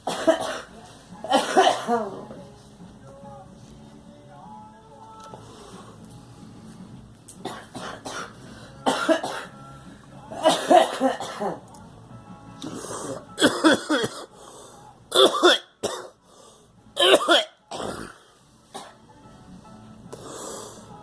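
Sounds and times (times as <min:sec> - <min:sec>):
person coughing: 0:00.0 - 0:00.7, 0:01.3 - 0:02.2, 0:07.4 - 0:09.5, 0:10.4 - 0:11.6, 0:13.4 - 0:14.3, 0:15.1 - 0:16.2, 0:17.0 - 0:19.0.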